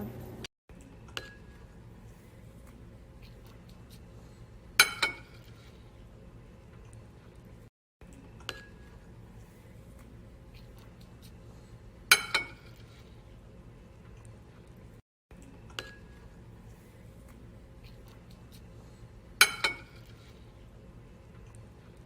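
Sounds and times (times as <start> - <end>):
kitchenware clinking: 4.8 - 5.6, 12.1 - 12.9, 19.4 - 20.3.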